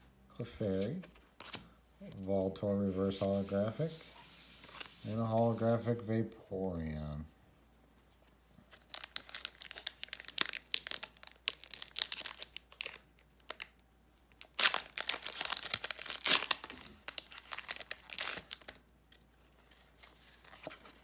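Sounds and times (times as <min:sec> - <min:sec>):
foil wrapper crinkling and tearing: 0:08.8 - 0:18.8.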